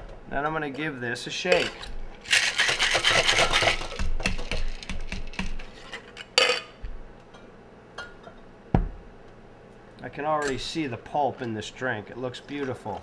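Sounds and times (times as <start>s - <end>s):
ice rattling in cocktail shaker: 1.6s - 4.9s.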